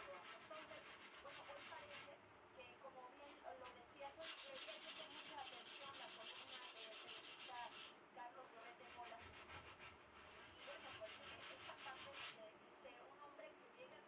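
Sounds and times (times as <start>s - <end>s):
hand sanding metal rim: 4.2s - 7.9s, 8.9s - 12.4s.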